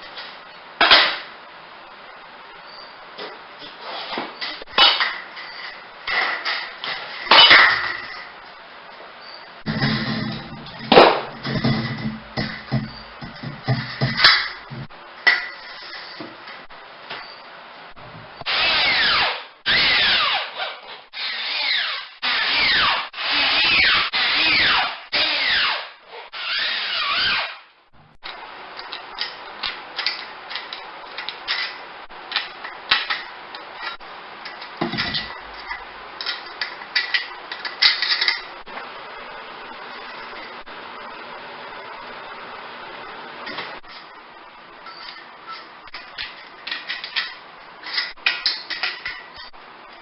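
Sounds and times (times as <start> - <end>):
power drill whining: 18.5 - 20.5, 21.2 - 27.6.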